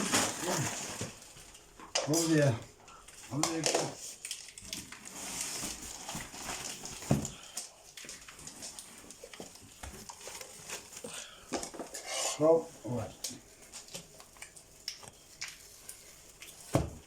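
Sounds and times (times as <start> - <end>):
plastic and cardboard crinkling: 0.0 - 17.0.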